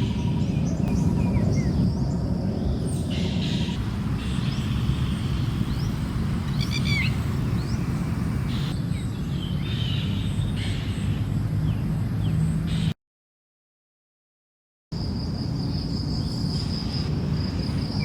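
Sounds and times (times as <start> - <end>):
birds chirping: 0.0 - 12.9
bird stuttering call: 3.6 - 7.6.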